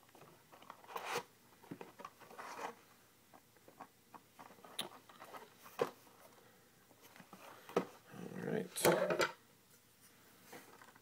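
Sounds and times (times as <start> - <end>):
card box handling rustles: 0.5 - 2.9.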